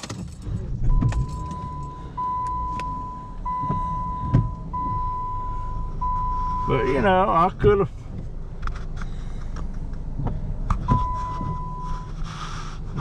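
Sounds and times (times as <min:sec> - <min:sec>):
car engine running: 0:00.0 - 0:13.0
car warning chime: 0:00.9 - 0:07.8, 0:10.8 - 0:12.1.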